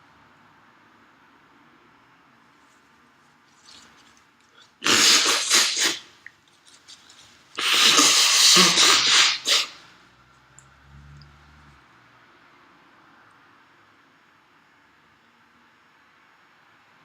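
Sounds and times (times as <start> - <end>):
person blowing air through nose: 4.8 - 6.1, 7.6 - 9.8.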